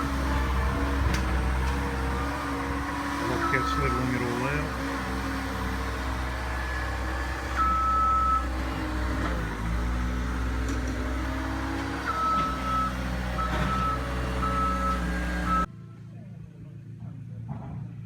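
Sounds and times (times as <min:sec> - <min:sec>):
reversing alarm beeping: 0:00.0 - 0:04.9, 0:06.1 - 0:08.6, 0:12.0 - 0:15.7
loader engine running: 0:00.0 - 0:16.0.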